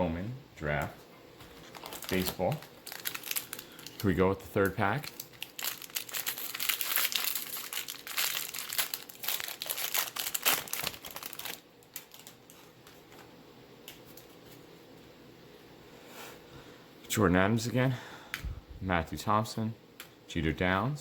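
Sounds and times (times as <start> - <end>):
cards being handled: 1.4 - 14.6
card pack wrapper tearing: 1.6 - 12.6.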